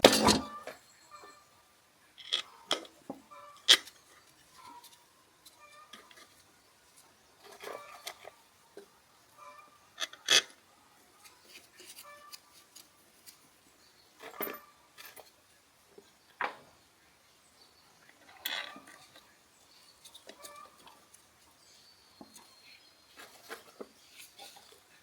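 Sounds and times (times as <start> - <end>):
clinks of metal tools and parts: 0.0 - 1.4, 14.2 - 15.3, 18.2 - 19.2.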